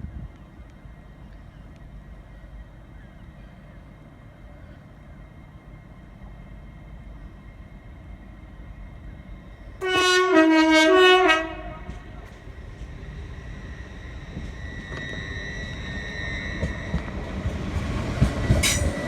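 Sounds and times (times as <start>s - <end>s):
two-note train horn: 9.8s - 12.3s.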